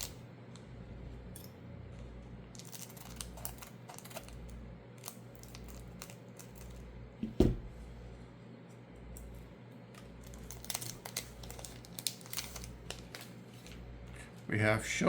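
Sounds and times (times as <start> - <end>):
foil pack crinkling: 2.5 - 6.9, 9.9 - 14.3
dull thump: 7.2 - 7.7.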